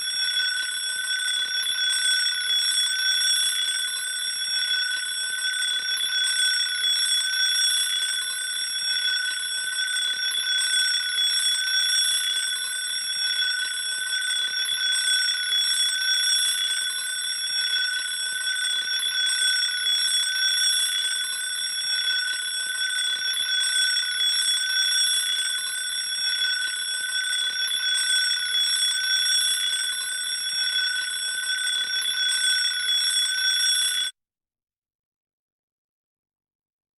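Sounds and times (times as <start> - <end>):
alarm clock ringing: 15.0 - 34.1.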